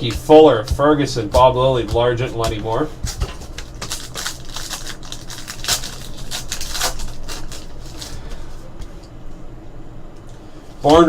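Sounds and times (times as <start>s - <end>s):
trading cards rustling: 2.4s - 9.0s.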